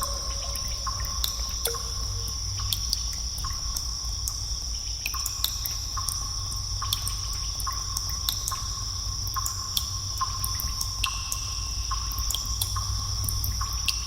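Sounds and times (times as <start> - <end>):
steady low rumble: 0.0 - 4.0
constant high hiss: 0.0 - 14.0
water dripping: 0.0 - 14.0.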